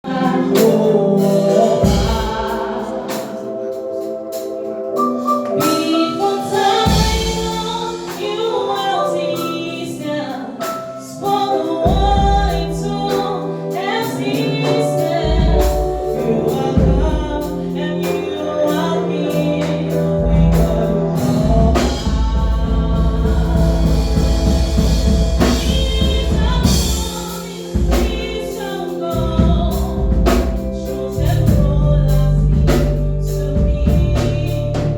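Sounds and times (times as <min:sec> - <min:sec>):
drums: 0:00.0 - 0:34.9
gospel choir singing: 0:00.0 - 0:34.9
bass: 0:14.3 - 0:34.9.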